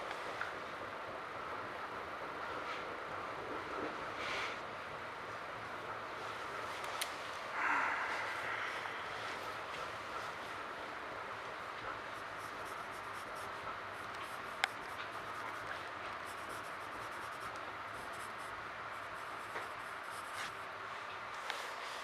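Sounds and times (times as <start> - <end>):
train car hiss and hum: 0.0 - 22.0
pencil scratching on paper: 12.1 - 20.6.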